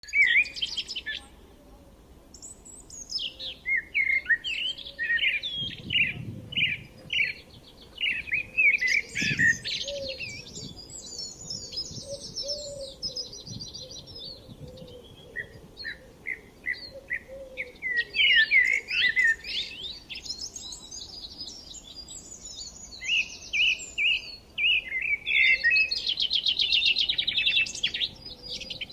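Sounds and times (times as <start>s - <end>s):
songbirds singing and chirping: 0.0s - 28.9s.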